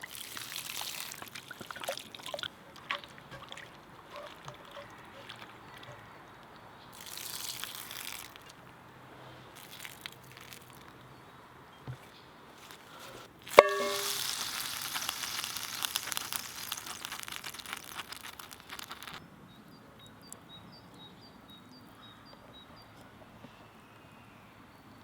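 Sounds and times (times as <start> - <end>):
food sizzling in a pan: 13.5 - 19.2
sharp metallic clink: 13.6 - 14.4.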